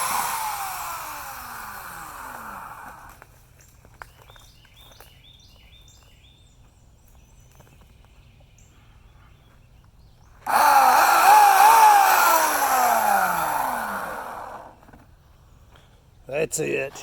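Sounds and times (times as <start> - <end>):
electric chainsaw motor running: 0.0 - 3.2, 10.4 - 15.0.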